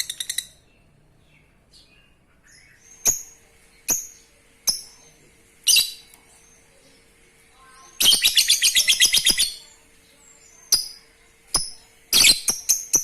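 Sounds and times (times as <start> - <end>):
lovebird shrill chattering chirps: 0.0 - 0.7, 7.8 - 9.8, 10.4 - 13.0.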